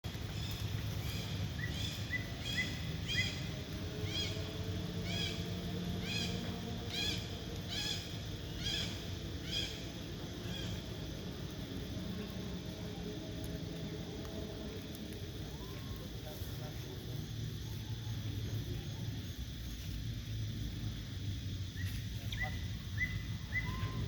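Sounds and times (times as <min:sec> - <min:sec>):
monkey chirping calls: 0:21.8 - 0:24.0.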